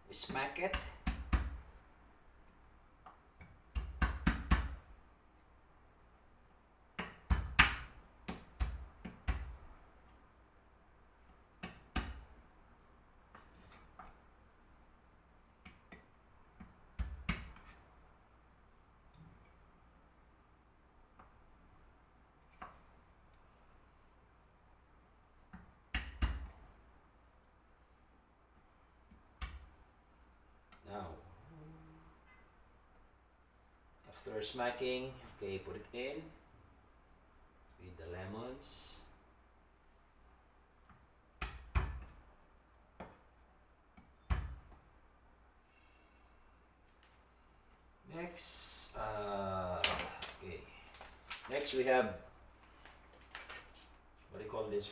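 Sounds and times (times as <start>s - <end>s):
sharp knocks crushing food: 3.4s - 4.8s.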